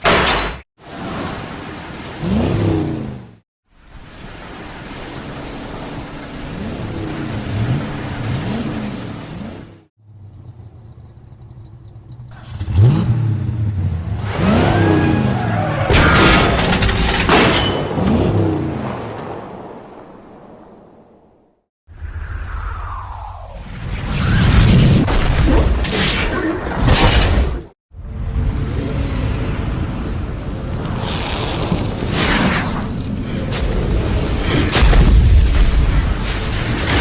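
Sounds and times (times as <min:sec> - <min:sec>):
sharp hits and crashes: 0:00.0 - 0:00.7, 0:15.9 - 0:18.5, 0:24.3 - 0:27.8, 0:28.9 - 0:37.0
car engine revving: 0:05.0 - 0:15.9.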